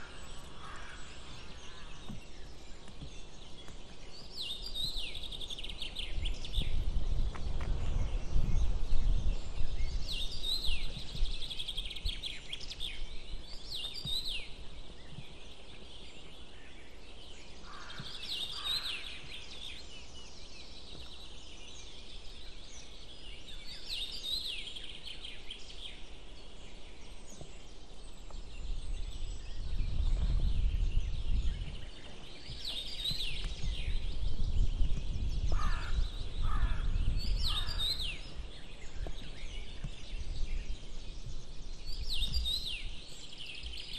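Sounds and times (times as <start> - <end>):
wind rumbling on microphone: 0.0 - 43.9
lower bird calls: 8.3 - 43.9.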